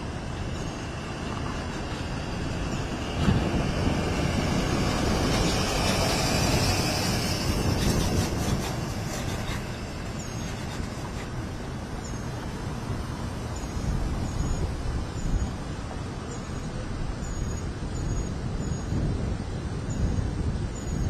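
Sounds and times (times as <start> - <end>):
jet engines rumbling: 0.0 - 16.3.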